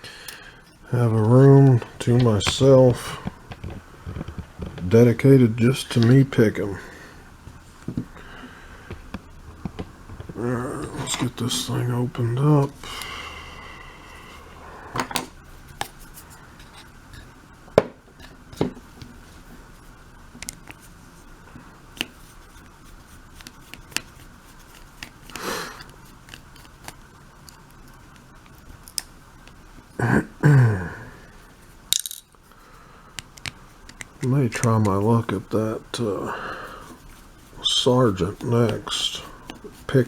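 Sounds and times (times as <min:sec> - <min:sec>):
handling noise: 0:00.8 - 0:29.9, 0:33.2 - 0:40.0
metal lock parts clicking: 0:31.9 - 0:32.3.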